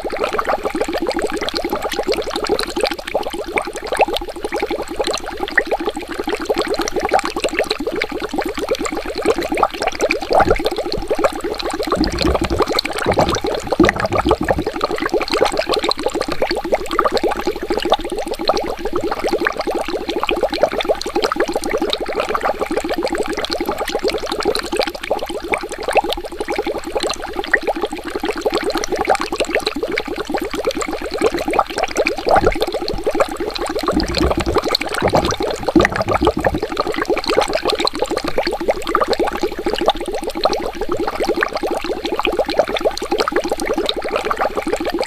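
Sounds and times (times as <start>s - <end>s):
water bubbling and gurgling: 0.0s - 45.0s
low rumbles: 12.0s - 14.7s, 33.9s - 36.8s.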